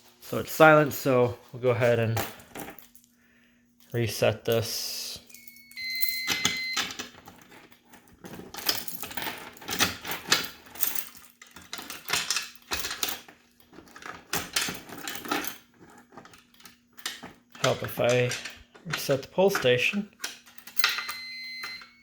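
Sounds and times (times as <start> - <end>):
small metal parts rattling: 5.3 - 21.8
keys jangling: 8.4 - 13.3.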